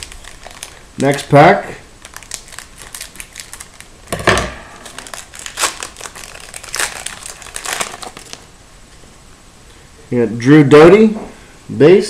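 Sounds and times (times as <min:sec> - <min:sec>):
wrapper being torn and crinkled: 0:00.0 - 0:08.5.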